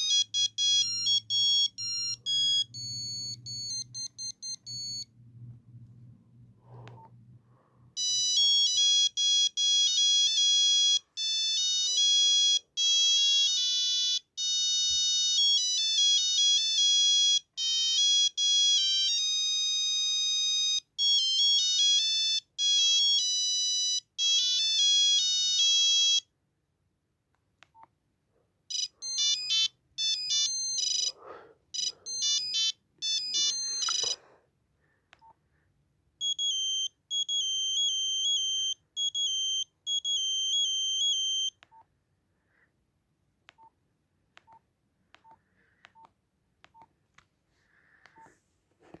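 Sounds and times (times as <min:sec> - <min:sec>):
monophonic phone ringtone beeps: 0:00.0 - 0:05.1, 0:08.0 - 0:26.3, 0:28.7 - 0:31.2, 0:31.8 - 0:34.2, 0:36.2 - 0:41.6.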